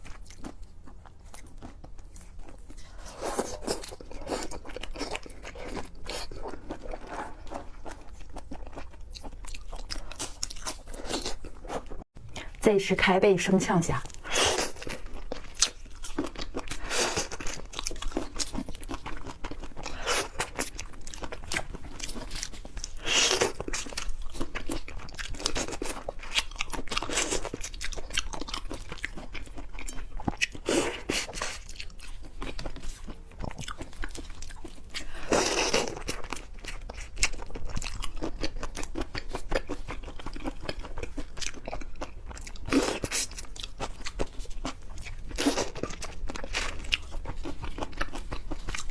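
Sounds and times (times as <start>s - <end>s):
chewing and crunching: 0.0s - 12.6s, 14.0s - 48.9s.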